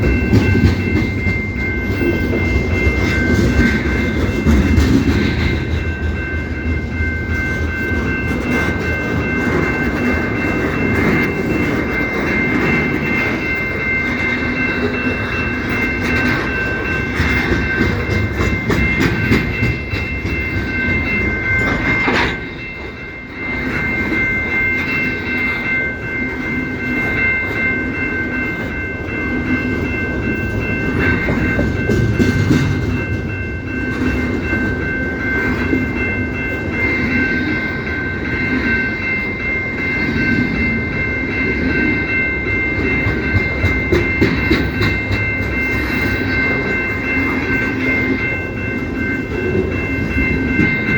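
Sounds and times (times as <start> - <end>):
high-pitched multi-tone ringing: 0.0 - 50.9
train wheels clacking over rail joints: 2.8 - 6.2, 15.9 - 22.6, 42.8 - 46.4.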